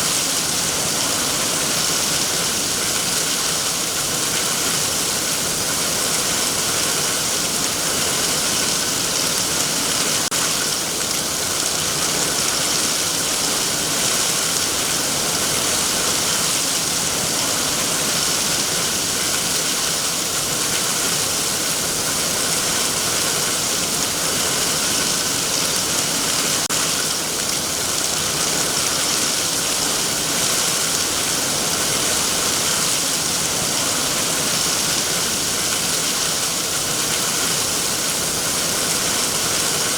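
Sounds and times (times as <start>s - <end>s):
heavy rain on foliage: 0.0s - 39.9s.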